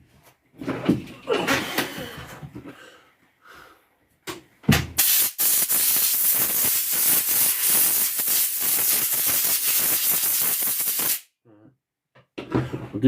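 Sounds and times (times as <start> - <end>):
aerosol spray hissing: 5.0 - 11.3.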